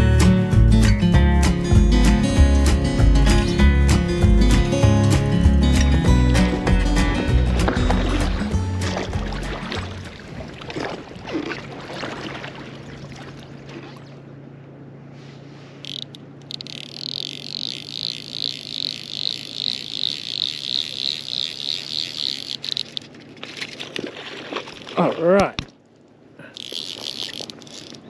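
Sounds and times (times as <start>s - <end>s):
steady low hum: 0.0s - 10.3s.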